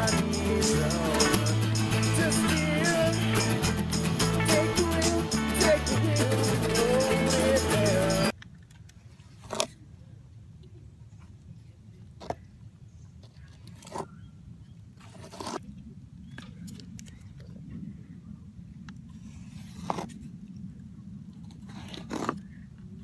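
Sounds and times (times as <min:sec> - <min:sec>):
scrapes and crunches on roofing: 0:13.2 - 0:14.2, 0:15.0 - 0:15.6, 0:19.2 - 0:20.3, 0:21.4 - 0:22.6.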